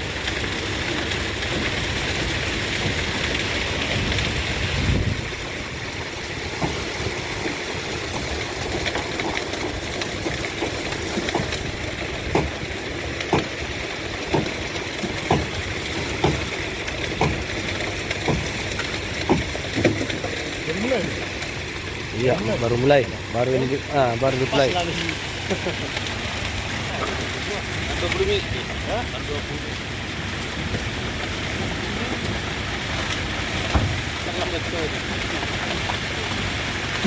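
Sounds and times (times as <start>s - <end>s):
wet concrete rushing and sloshing: 0.0s - 37.0s
sharp knocks: 10.2s - 12.6s, 13.2s - 13.6s, 14.3s - 20.2s.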